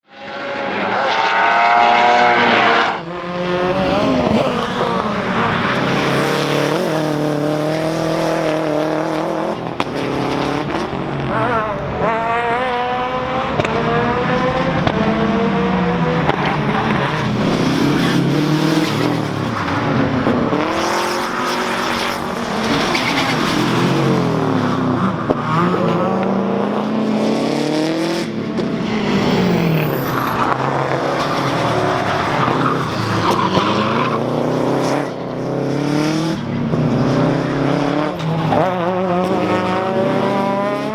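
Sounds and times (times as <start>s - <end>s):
rally car engine revving: 0.1s - 40.9s
tyre squeal: 21.5s - 24.2s.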